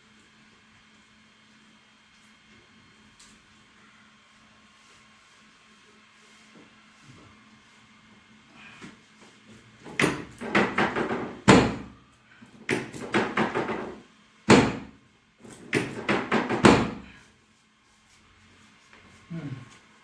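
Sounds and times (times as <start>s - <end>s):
percussion massage gun thudding: 9.8s - 12.0s, 12.6s - 17.2s.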